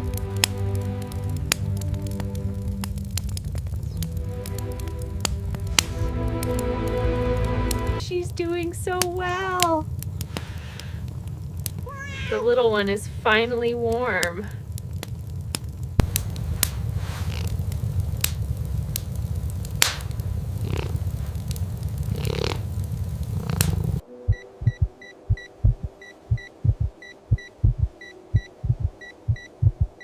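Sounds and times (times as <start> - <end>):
low rumble with crackles: 0.0 - 30.0
medical monitor beeping: 24.3 - 29.6
heartbeat-like thumping: 24.3 - 30.0.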